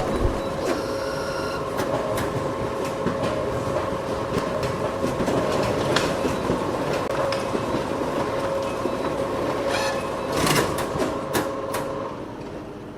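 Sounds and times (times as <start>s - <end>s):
steady hum: 0.0s - 1.6s
photocopier whirring: 0.0s - 1.8s.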